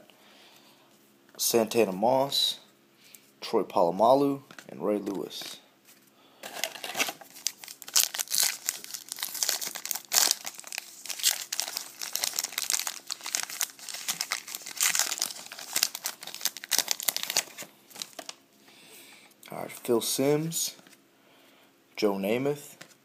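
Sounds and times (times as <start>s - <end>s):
plastic wrapper crinkling and tearing: 6.4s - 18.4s.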